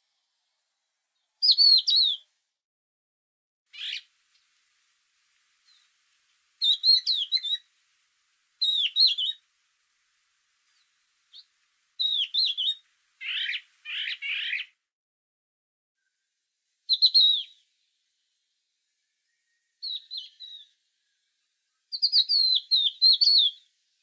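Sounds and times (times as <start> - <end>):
songbird whistling and twittering: 1.4 - 2.3, 3.8 - 4.1, 6.6 - 7.7, 8.6 - 9.4, 10.8 - 14.7, 16.9 - 17.6, 19.2 - 20.8, 21.9 - 23.7.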